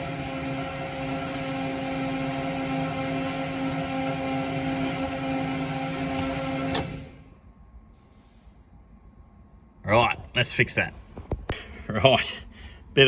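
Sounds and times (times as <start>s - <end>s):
electric fuel pumps humming: 0.0s - 7.8s.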